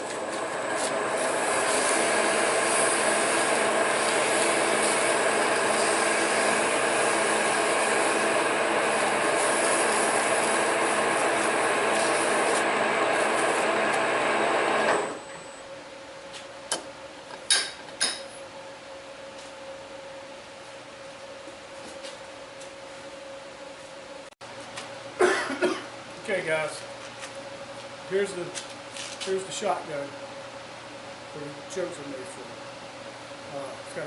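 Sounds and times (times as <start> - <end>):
tool scraping spinning metal: 0.0 - 15.1
metal lathe running: 0.0 - 15.2.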